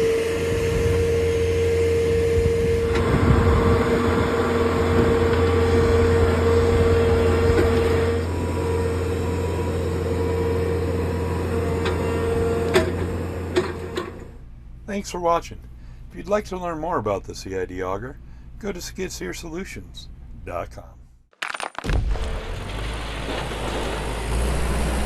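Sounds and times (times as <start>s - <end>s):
hydraulic whine: 0.0s - 14.5s, 21.9s - 25.0s
engine hum: 0.0s - 14.9s, 21.9s - 25.0s.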